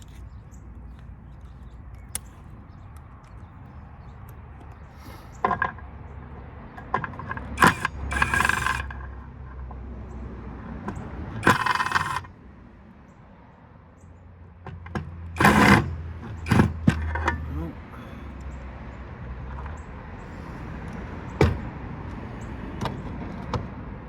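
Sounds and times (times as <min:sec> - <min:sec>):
metal tools clinking and scraping: 0:07.3 - 0:08.9, 0:11.4 - 0:12.3, 0:15.4 - 0:17.5.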